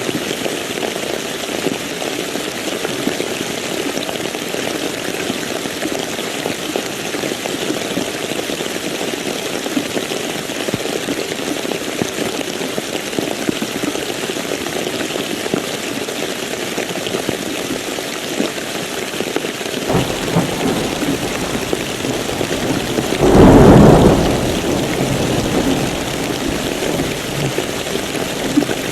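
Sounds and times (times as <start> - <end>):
heavy rain falling: 19.9 - 28.9
loud thunderclap: 19.9 - 28.9
low thunder rumble: 19.9 - 28.9.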